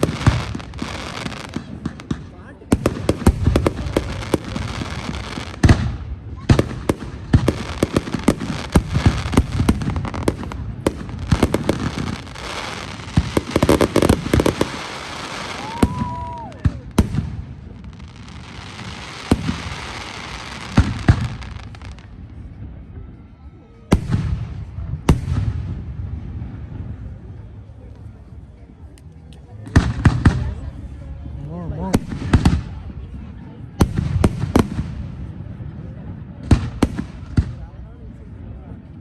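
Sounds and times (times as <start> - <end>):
fireworks booms and pops: 0.0 - 22.2, 23.9 - 27.0, 29.7 - 30.6, 33.8 - 35.6, 36.3 - 37.7
fireworks crackle: 0.0 - 23.1.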